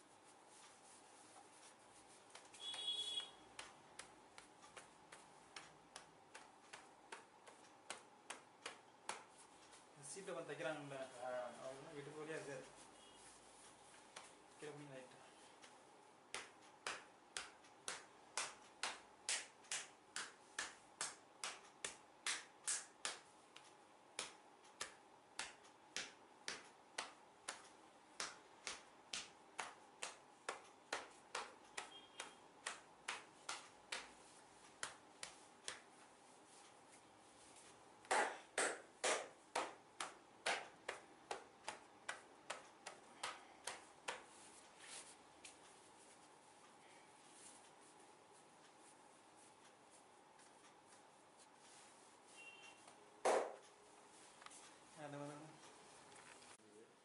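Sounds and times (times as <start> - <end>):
hand tapping head: 2.3 - 9.4, 16.3 - 34.2, 38.0 - 44.4.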